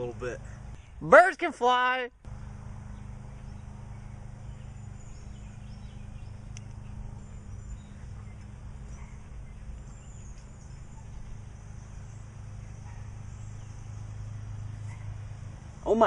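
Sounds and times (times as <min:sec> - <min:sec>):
low hum: 0:02.2 - 0:15.9
bird chirps: 0:02.3 - 0:16.0.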